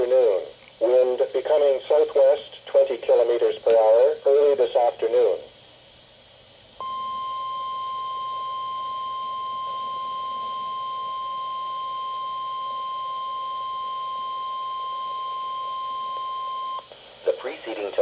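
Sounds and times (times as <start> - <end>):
high-pitched alarm beep: 6.8 - 16.8.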